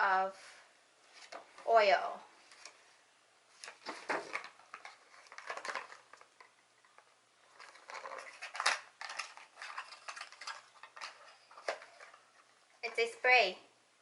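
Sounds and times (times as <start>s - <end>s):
packaging clicks: 3.6s - 12.4s
packaging rustling: 3.6s - 12.6s.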